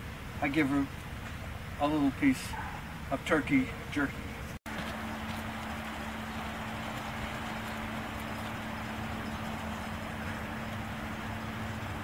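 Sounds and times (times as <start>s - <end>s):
mechanical hum: 4.2s - 12.0s.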